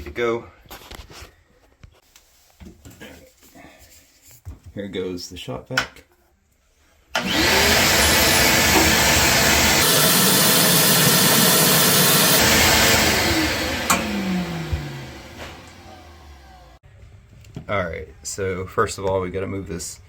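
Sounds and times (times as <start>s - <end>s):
shop vac motor whining: 7.1s - 16.8s
shop vac sucking water: 7.2s - 16.8s.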